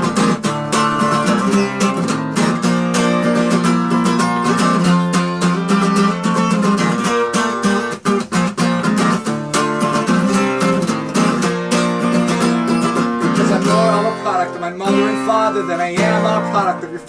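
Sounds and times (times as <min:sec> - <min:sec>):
acoustic guitar strumming: 0:00.0 - 0:17.0.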